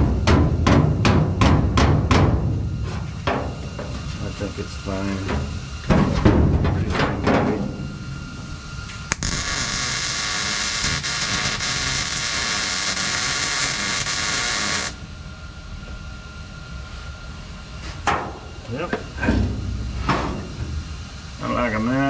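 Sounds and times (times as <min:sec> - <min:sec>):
welder hissing: 0:07.7 - 0:15.1.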